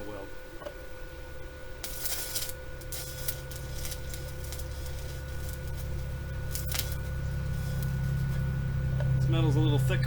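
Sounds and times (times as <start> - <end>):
welder hum: 0.8 - 10.0
welding arc crackling: 1.2 - 9.9
welding arc hissing: 1.7 - 9.4.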